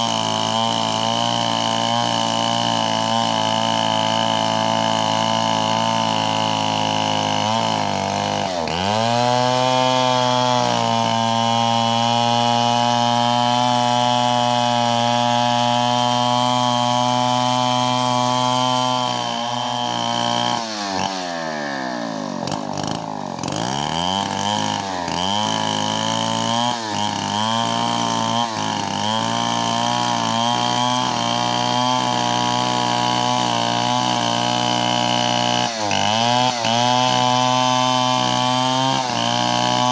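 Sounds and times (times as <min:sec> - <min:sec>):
chainsaw cutting log: 0:00.0 - 0:39.9.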